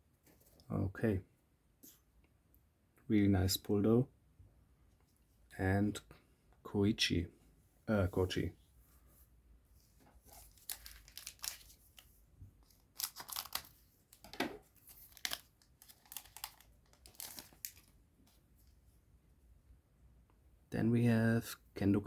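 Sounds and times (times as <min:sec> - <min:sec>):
foil wrapper tearing and crinkling: 0:10.3 - 0:12.1, 0:12.7 - 0:18.0.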